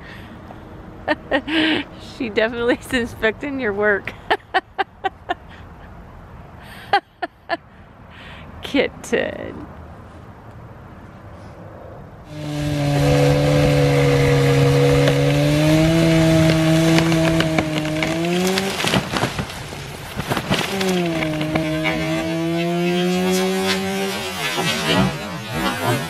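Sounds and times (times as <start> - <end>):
chainsaw revving: 12.3 - 19.5, 20.2 - 26.0
chainsaw cutting wood: 12.3 - 26.0.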